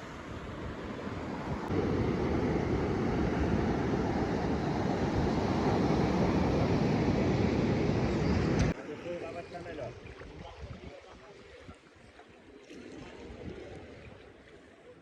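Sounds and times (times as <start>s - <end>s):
wind on microphone: 0.0s - 8.8s, 9.9s - 11.8s
moving water: 0.0s - 15.0s.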